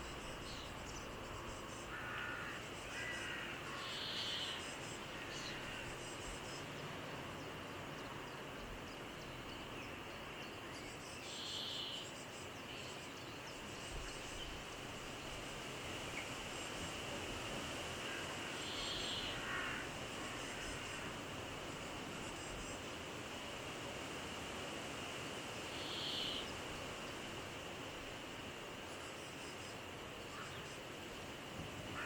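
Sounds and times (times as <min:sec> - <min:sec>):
outdoor field hiss: 0:00.0 - 0:32.0
crow cawing: 0:01.9 - 0:03.8, 0:19.2 - 0:19.9.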